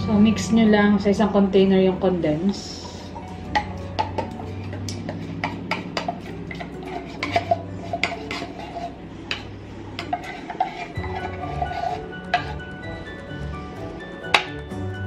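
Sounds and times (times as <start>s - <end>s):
spoon clinking and scraping container: 3.5s - 12.8s.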